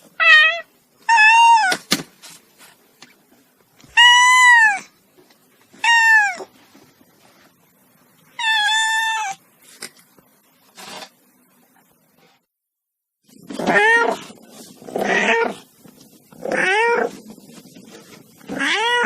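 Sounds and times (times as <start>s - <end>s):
cat meowing: 0.2s - 1.8s, 3.9s - 4.9s, 5.8s - 6.5s, 8.4s - 9.4s, 13.6s - 14.3s, 14.9s - 15.6s, 16.4s - 17.2s, 18.5s - 19.0s.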